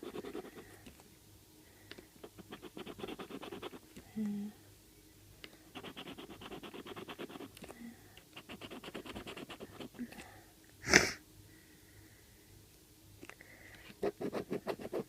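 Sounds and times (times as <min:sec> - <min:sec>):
person sniffing: 0:10.8 - 0:11.2.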